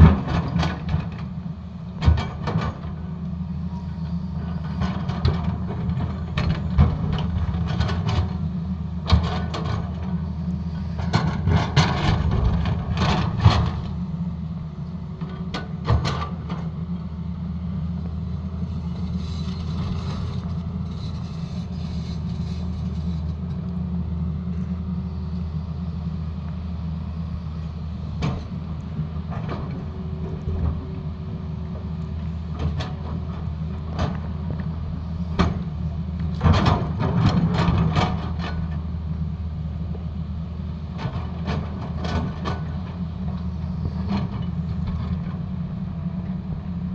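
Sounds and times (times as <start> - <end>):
excavator diesel engine: 0.0 - 46.9.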